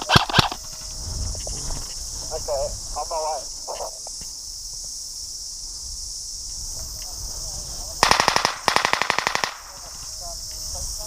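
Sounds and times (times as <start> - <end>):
airsoft rifle full-auto bursts: 8.0 - 9.8.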